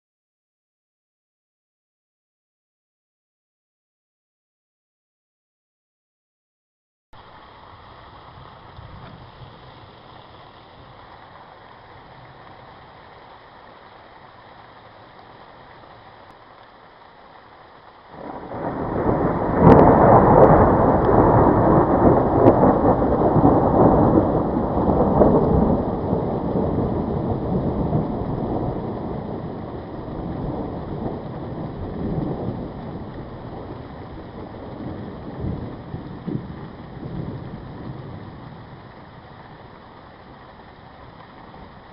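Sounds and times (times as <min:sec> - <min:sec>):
steady rain falling: 0:07.2 - 0:41.9
thunder crack and rumble: 0:18.1 - 0:39.6.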